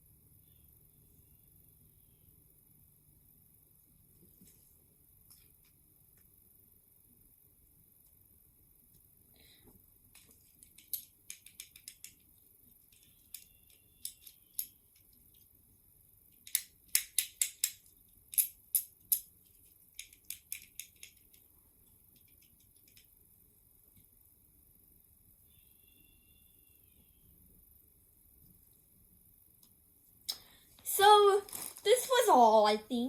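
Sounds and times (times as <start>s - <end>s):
small hard objects clicking: 10.1s - 15.5s, 16.3s - 23.1s.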